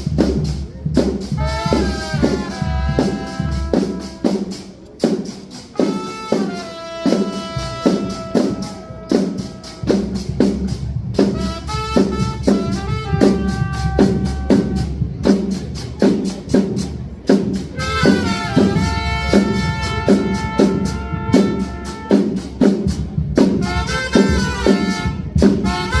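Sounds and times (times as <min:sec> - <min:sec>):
band with steady drum beat: 0:00.0 - 0:26.0
trumpet melody: 0:01.3 - 0:04.9, 0:05.7 - 0:15.2, 0:17.7 - 0:22.7, 0:23.4 - 0:26.0.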